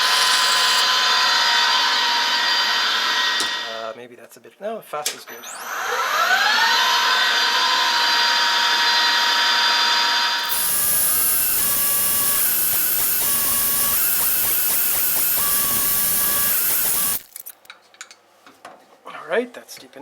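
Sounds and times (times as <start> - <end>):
drill bit cutting steel: 0.0 - 3.8, 9.7 - 17.4
metal lathe whining: 0.0 - 3.8, 5.5 - 17.3.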